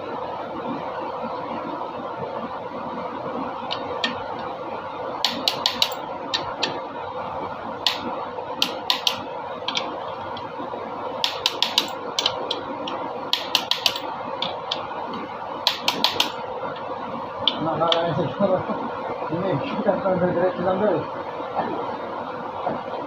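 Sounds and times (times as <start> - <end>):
steady hum: 0.0 - 23.0
sharp metallic clicks: 5.2 - 6.8, 7.8 - 10.5, 11.2 - 14.9, 15.6 - 16.4.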